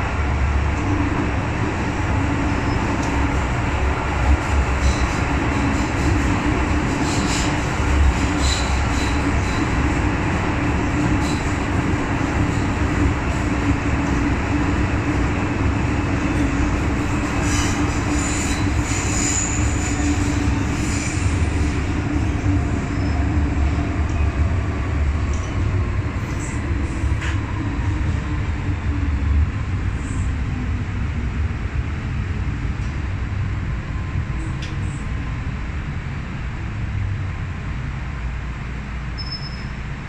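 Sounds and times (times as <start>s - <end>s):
train wheels rumbling on rail: 0.0s - 40.0s
high-pitched wheel squeal: 39.2s - 39.8s.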